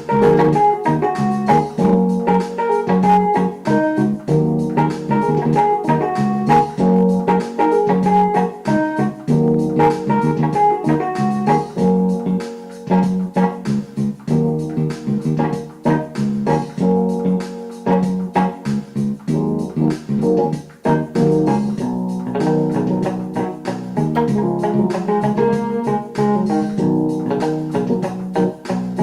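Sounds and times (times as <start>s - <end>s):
organ chords: 0.0s - 29.0s
piano notes: 0.0s - 29.0s.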